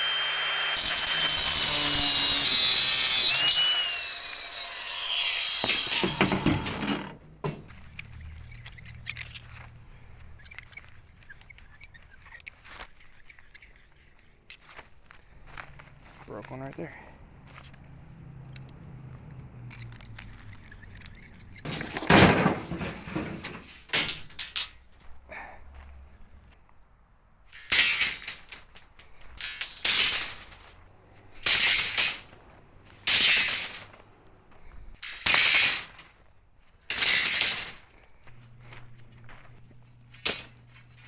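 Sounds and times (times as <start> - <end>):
angle grinder cutting metal: 0.0 - 9.4, 10.4 - 12.2, 19.8 - 21.8.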